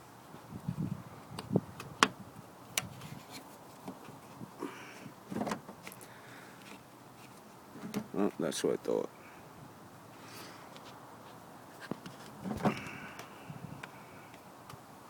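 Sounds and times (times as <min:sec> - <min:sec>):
rubbing and handling noise: 0:02.8 - 0:04.5, 0:05.2 - 0:08.5.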